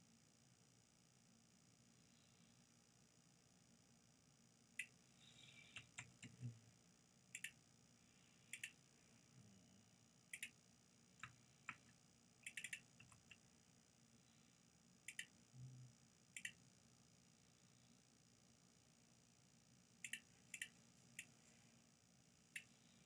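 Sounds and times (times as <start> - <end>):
computer mouse clicks: 5.7 - 6.5, 7.3 - 7.6, 8.5 - 8.8, 10.3 - 10.6, 11.2 - 13.4, 15.0 - 15.3, 16.4 - 16.6, 20.0 - 21.4.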